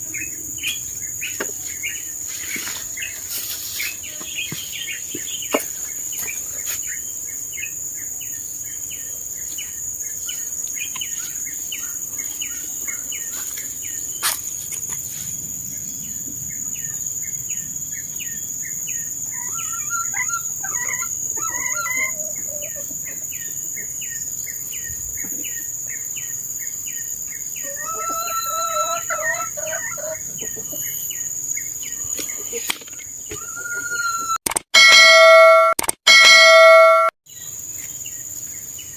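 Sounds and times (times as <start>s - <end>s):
chickens clucking: 19.4s - 23.6s, 27.6s - 31.3s, 32.0s - 34.4s.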